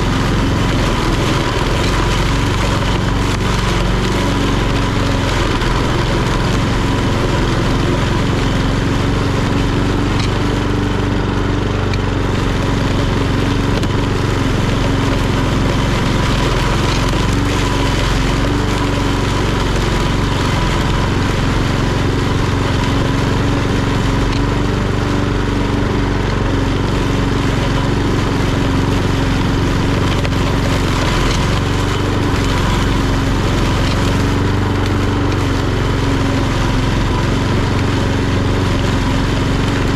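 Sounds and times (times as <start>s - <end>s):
lawnmower engine running: 0.0s - 39.9s.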